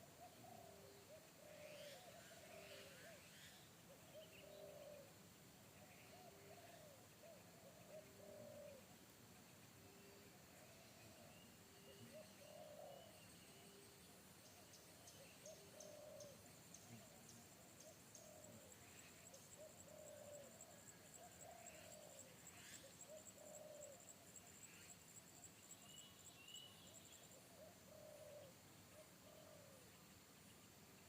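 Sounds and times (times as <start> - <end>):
doves cooing: 0.0 - 5.0, 6.0 - 8.9, 10.0 - 13.8, 15.2 - 24.1, 27.4 - 29.8.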